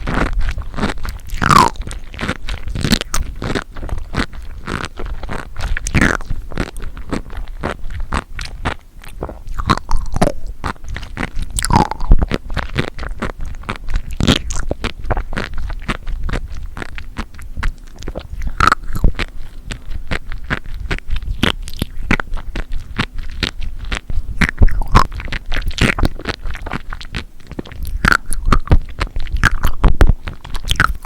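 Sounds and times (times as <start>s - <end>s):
crunchy chewing: 0.0s - 31.0s
wet mouth sounds: 0.0s - 31.0s.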